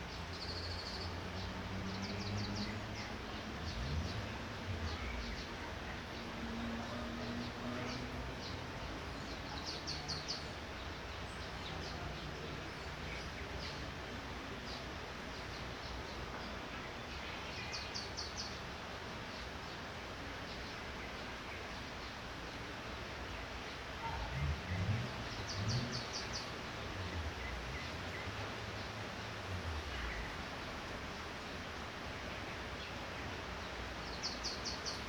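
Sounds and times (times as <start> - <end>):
light rain hissing: 23.2 - 35.0.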